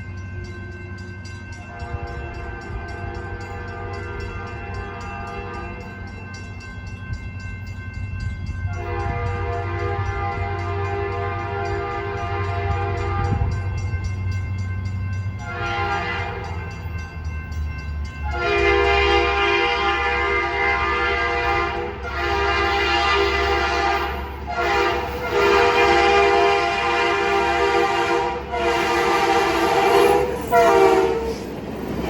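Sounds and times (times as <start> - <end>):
train rumble: 0.0 - 32.0
locomotive horn blasts: 1.7 - 6.0, 8.7 - 13.7, 15.4 - 16.7, 18.2 - 31.5.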